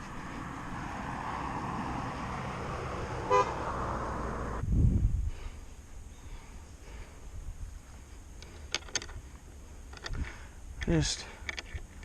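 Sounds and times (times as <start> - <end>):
vehicle passing: 0.0 - 4.6
short horn beep: 3.3 - 3.5.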